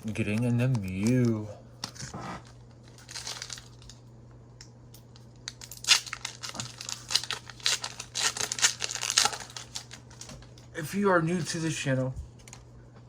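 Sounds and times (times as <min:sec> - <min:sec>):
foil wrapper tearing and crinkling: 0:02.9 - 0:04.0, 0:05.5 - 0:10.5.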